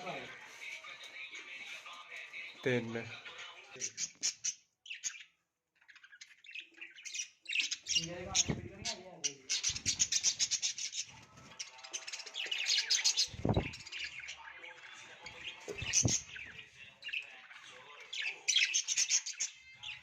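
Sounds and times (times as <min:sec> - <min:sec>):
budgerigars chattering: 0:06.5 - 0:11.1, 0:12.4 - 0:17.4.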